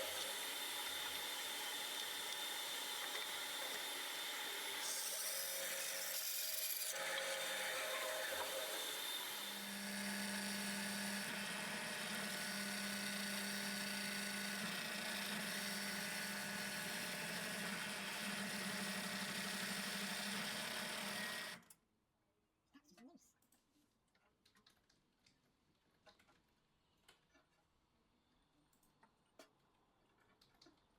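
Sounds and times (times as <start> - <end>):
wood cutting or sanding: 0.0 - 21.5
power tool motor humming: 0.0 - 21.6.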